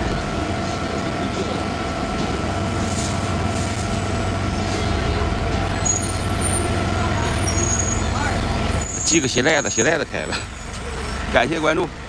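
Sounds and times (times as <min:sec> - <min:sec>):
low mechanical hum: 0:00.0 - 0:09.2.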